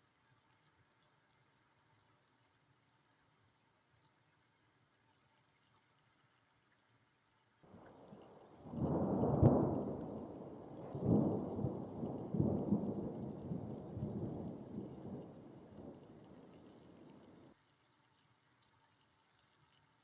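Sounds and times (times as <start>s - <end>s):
thunder rumbling: 7.7s - 17.5s.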